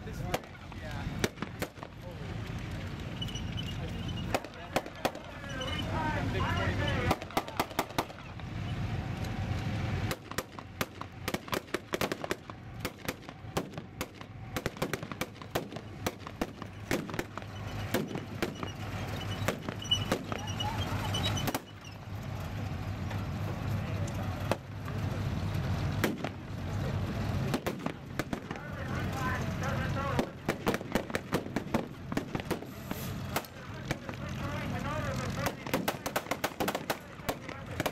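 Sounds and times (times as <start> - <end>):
low steady rumble: 0.0 - 37.9
distant gunshots: 35.4 - 37.9.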